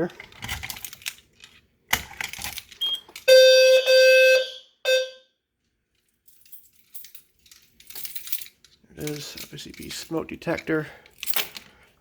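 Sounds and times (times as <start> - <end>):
alarm horn chirp: 2.8 - 5.4
low buzzy alarm horn: 3.3 - 5.3.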